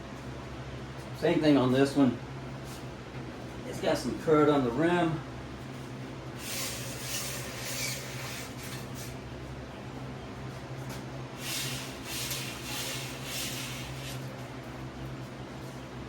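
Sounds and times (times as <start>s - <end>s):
rubbing on bicycle rim: 6.4s - 8.8s.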